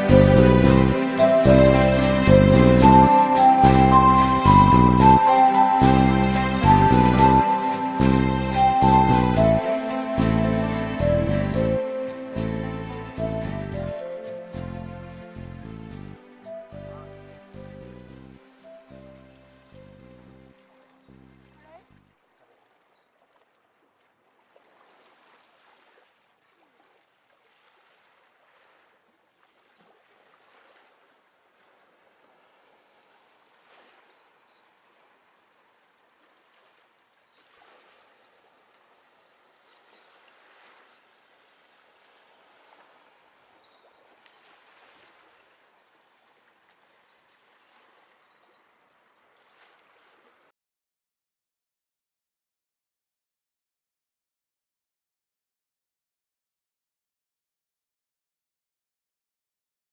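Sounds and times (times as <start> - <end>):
small sea waves: 0.0 - 13.4, 18.3 - 50.5.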